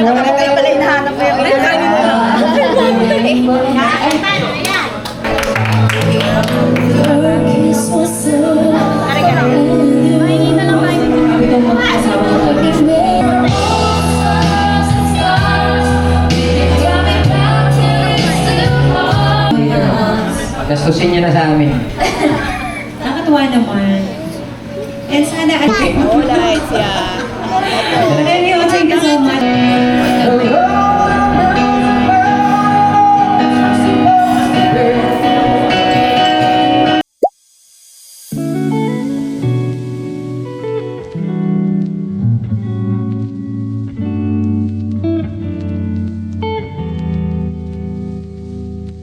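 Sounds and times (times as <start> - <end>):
music with sung melody: 5.3 - 20.6, 29.2 - 37.0, 38.3 - 49.0
person singing: 6.0 - 20.6, 29.4 - 36.8.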